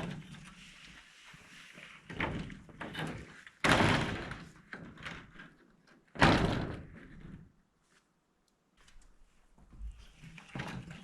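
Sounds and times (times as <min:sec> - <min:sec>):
roofing panels clattering: 0:02.0 - 0:07.4.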